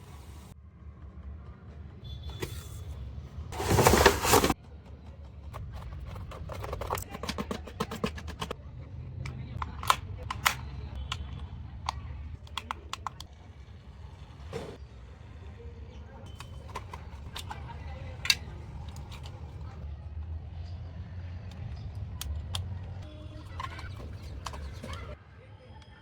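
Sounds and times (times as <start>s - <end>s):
packaging rustling: 3.6s - 4.6s
clicks and taps of toy and box: 5.2s - 8.6s.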